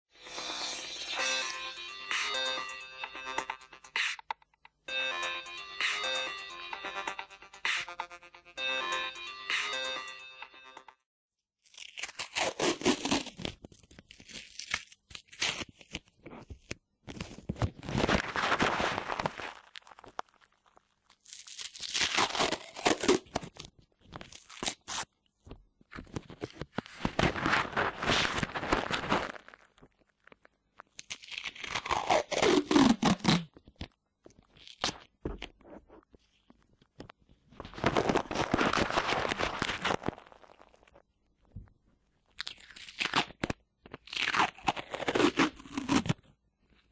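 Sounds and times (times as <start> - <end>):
sticky tape crackling and tearing: 11.6 - 25.2, 26.1 - 35.2, 37.6 - 41.0, 42.4 - 46.3.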